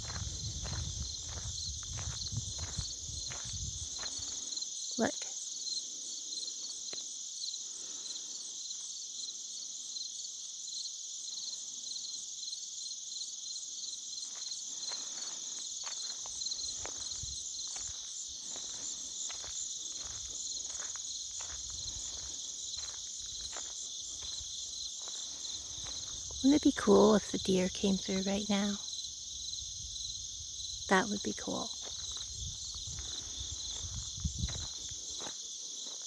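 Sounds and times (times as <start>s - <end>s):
footsteps: 0.0s - 4.5s, 14.4s - 26.8s, 31.9s - 36.0s
crickets chirping: 0.0s - 36.0s.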